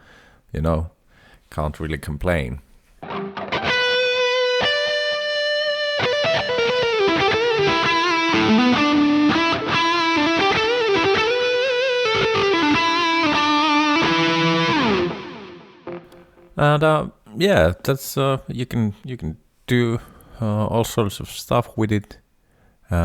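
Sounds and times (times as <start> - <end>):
distorted electric lead guitar: 3.0 - 16.4.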